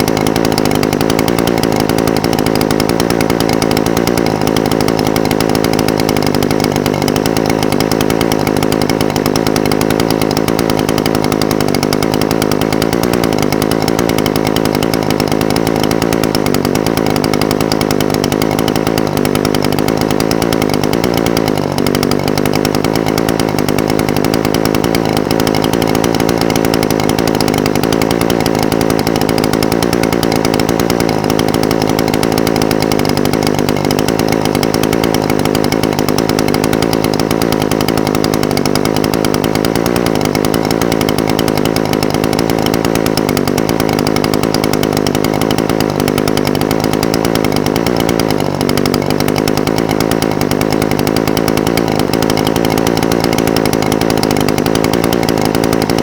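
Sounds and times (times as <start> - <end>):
small two-stroke engine idling: 0.0 - 56.0.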